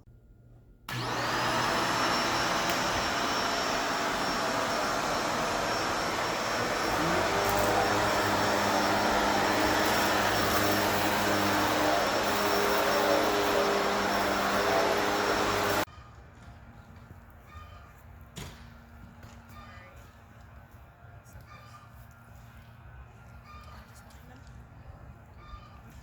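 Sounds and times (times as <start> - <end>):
machine motor drone with hiss: 0.9 - 15.9.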